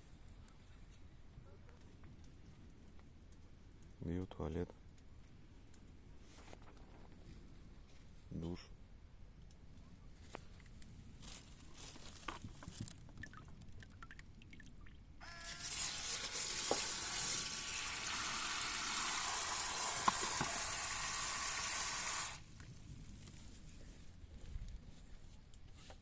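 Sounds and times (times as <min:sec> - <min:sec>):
water rushing from a tap: 0:15.2 - 0:22.4.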